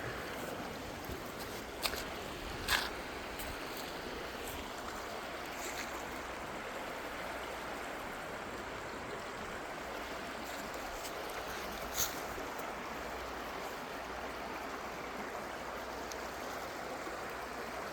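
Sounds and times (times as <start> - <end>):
stream flowing: 0.0 - 17.9.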